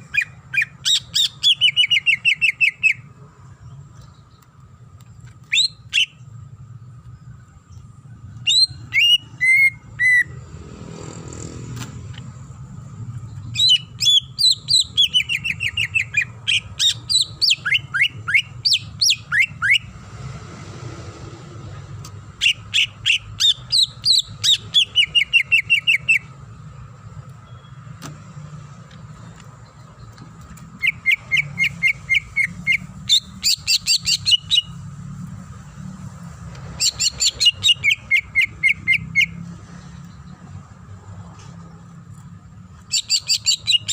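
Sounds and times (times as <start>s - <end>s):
bird singing chirps and whistles: 0.0s - 3.1s, 5.4s - 6.2s, 8.4s - 10.4s, 13.3s - 19.9s, 22.4s - 26.3s, 30.7s - 34.8s, 36.8s - 39.4s, 42.9s - 43.9s.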